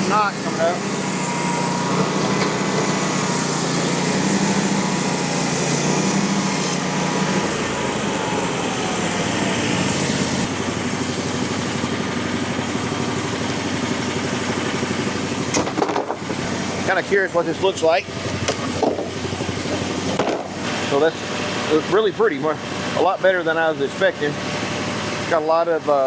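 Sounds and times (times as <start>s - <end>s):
band blade cutting log: 0.0s - 10.5s
sawmill engine running: 0.0s - 26.0s.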